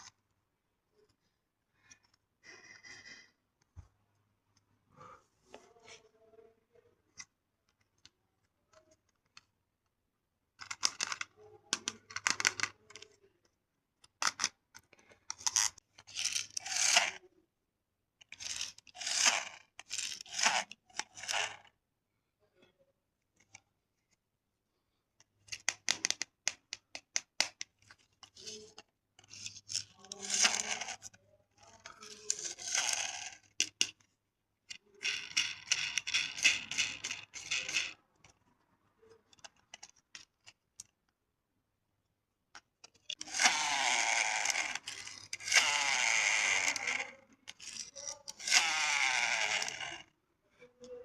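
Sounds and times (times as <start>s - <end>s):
toy car motors rasping: 15.3s - 17.2s, 18.2s - 21.7s, 27.9s - 33.7s, 35.0s - 38.0s, 43.0s - 50.1s.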